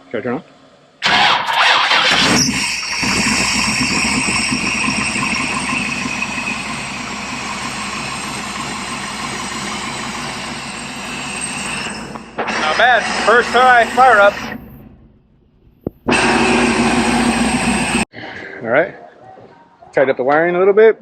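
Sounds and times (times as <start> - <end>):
car engine cranking and idling: 0.5 - 18.1
high-pitched whine: 1.4 - 15.0, 15.9 - 18.1.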